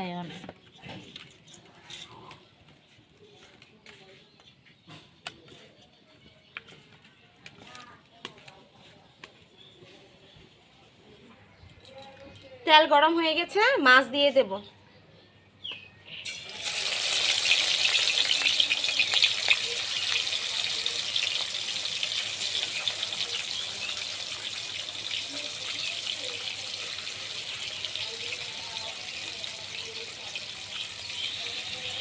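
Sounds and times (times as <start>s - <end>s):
fish sizzling in hot oil: 16.2s - 32.0s.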